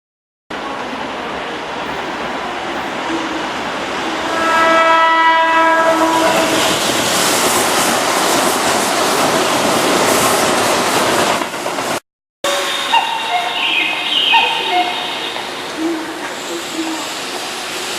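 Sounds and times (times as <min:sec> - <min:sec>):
train rushing past with rail clatter: 0:00.5 - 0:17.9
train horn: 0:04.2 - 0:06.7, 0:12.4 - 0:17.2.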